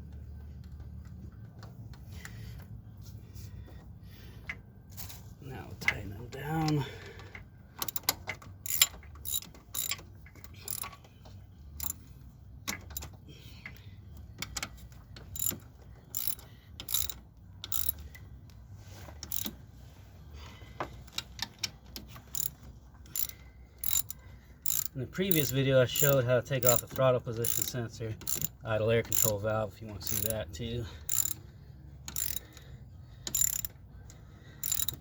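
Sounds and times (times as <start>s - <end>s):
ratchet wrench clicking: 7.8s - 11.0s, 11.8s - 12.0s, 15.2s - 18.2s, 19.2s - 19.6s, 22.2s - 29.4s, 30.0s - 30.4s, 31.1s - 31.4s, 32.0s - 35.0s.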